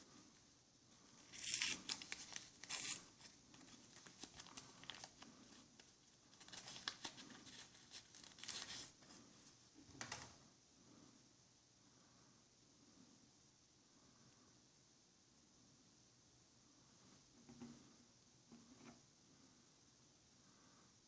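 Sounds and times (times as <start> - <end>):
sachet tearing and crinkling: 1.2 - 8.9.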